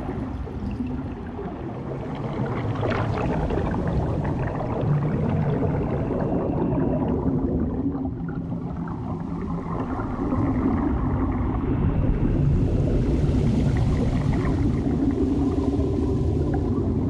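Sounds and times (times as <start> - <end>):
muffled underwater rumble: 0.0 - 17.0.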